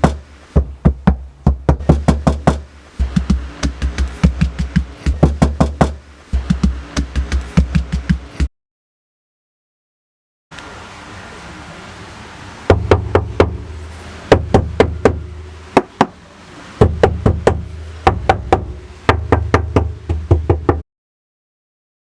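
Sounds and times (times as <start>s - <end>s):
knuckles knocking on car panels: 0.0s - 8.5s, 16.8s - 20.8s.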